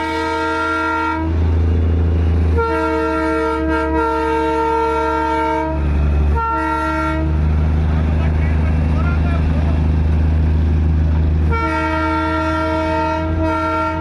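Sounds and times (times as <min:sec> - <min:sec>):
train horn blasts: 0:00.0 - 0:01.5, 0:02.5 - 0:07.5, 0:11.4 - 0:14.0.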